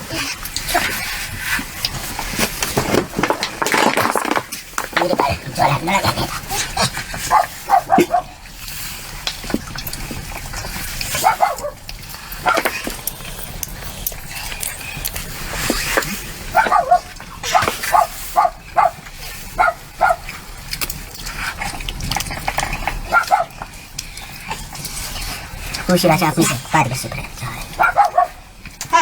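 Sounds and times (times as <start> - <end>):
dog barking: 7.2 - 8.3, 11.2 - 11.8, 16.5 - 19.0, 19.6 - 20.3, 23.1 - 23.5, 27.8 - 28.4.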